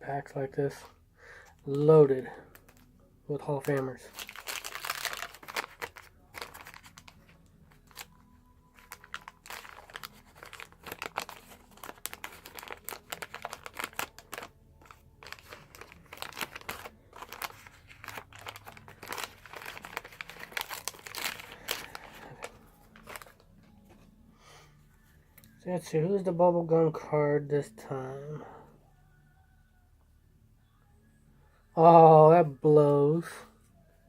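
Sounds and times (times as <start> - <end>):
wax paper wrapper crinkling: 1.6 - 24.0.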